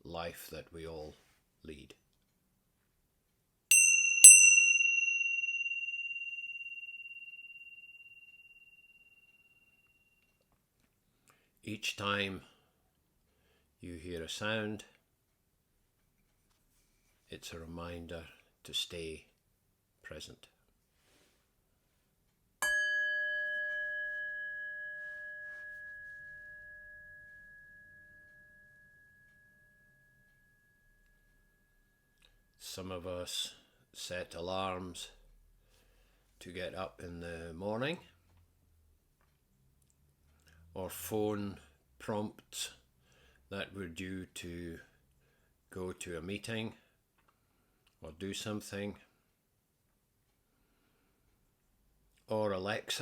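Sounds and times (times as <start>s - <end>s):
bell ringing: 3.7s - 10.1s, 22.6s - 32.0s
high-pitched meditation chime: 3.7s - 10.2s, 22.6s - 32.2s.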